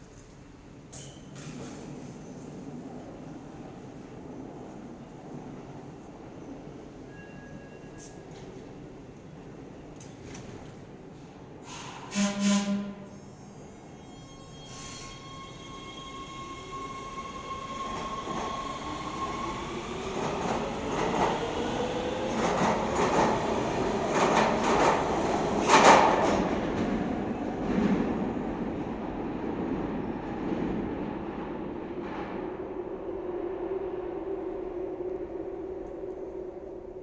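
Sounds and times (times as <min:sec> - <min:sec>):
subway train electric motor whine: 0:12.0 - 0:27.4.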